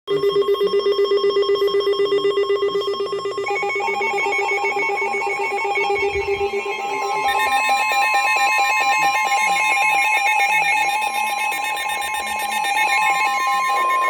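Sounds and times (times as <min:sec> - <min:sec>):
buzzy low pulsing beep: 0:00.1 - 0:14.0
higher pulsing tones: 0:02.3 - 0:08.9.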